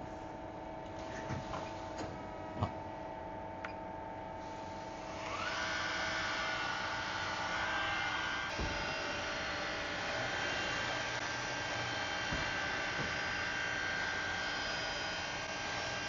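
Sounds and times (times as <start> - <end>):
lathe machine hum: 4.4 - 16.0
machine whine rising in pitch: 5.0 - 16.0.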